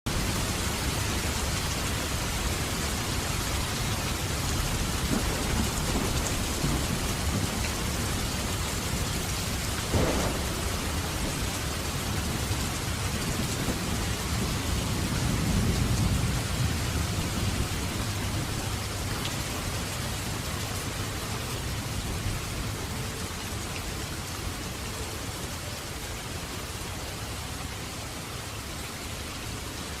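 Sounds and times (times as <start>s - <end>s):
heavy rain falling: 0.1s - 30.0s
low rumble of thunder: 0.2s - 25.0s
sharp thunderclap: 4.5s - 18.6s.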